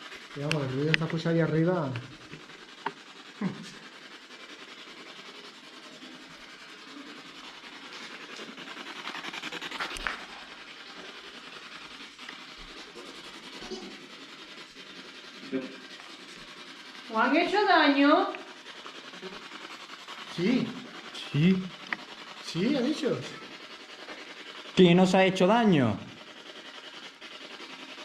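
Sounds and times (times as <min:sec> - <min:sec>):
rustling scrape: 0:00.0 - 0:28.0.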